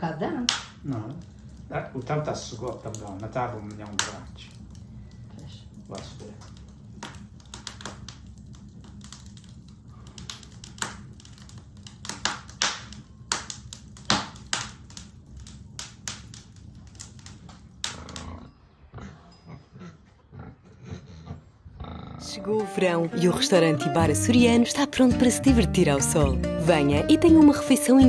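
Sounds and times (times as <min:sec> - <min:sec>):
low steady rumble: 0:00.0 - 0:18.3
wood fire crackling: 0:00.0 - 0:18.6, 0:22.2 - 0:28.0.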